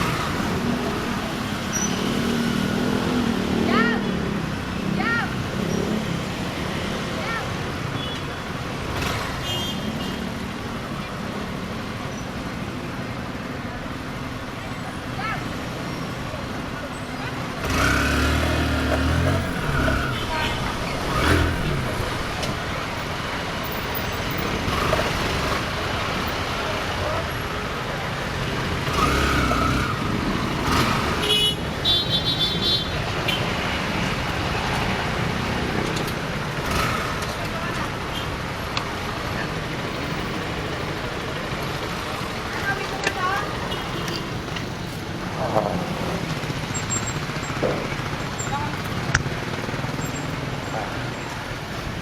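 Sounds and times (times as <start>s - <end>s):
wind and road noise: 0.0s - 52.0s
motorcycle engine hum: 16.8s - 52.0s.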